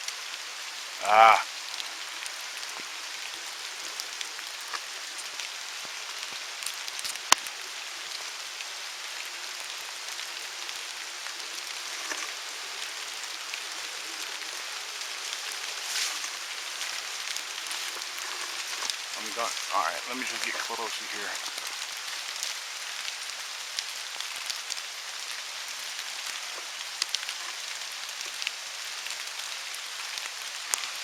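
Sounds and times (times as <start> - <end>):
steady rain in woodland: 0.0 - 31.0.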